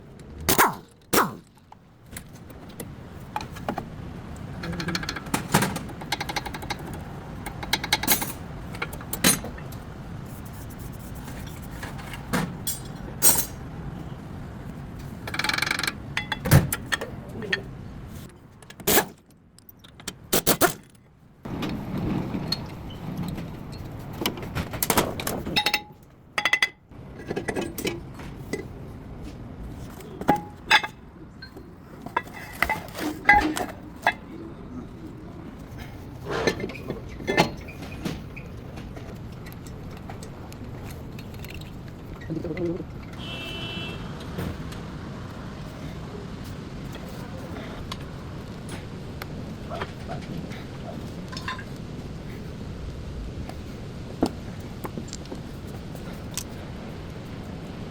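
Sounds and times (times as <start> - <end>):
metallic clanks of hand tools: 12.6 - 13.6, 30.2 - 34.2.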